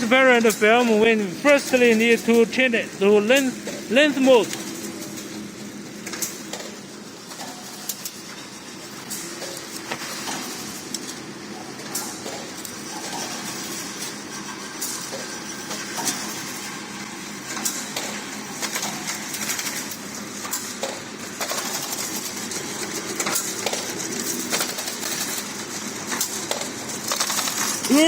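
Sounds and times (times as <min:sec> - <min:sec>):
machine mechanical hum: 0:00.0 - 0:28.0
clatter of sticks: 0:17.5 - 0:28.0.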